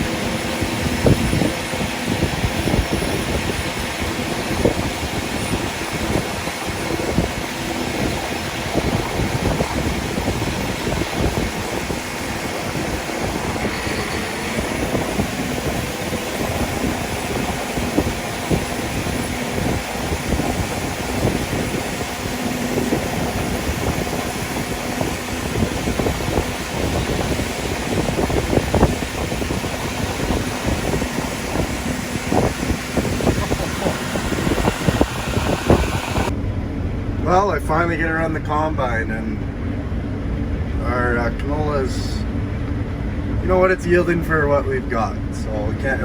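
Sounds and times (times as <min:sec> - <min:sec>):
machinery engine droning: 0:00.0 - 0:46.0.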